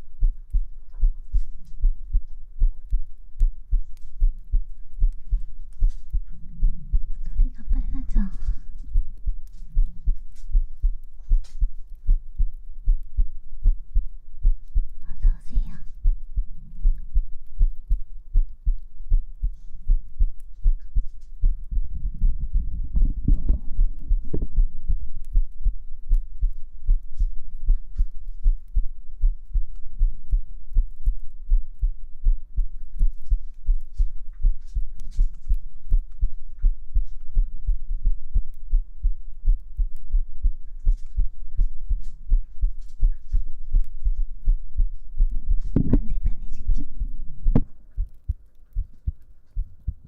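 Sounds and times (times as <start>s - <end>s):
heartbeat thumping: 0.0s - 50.0s.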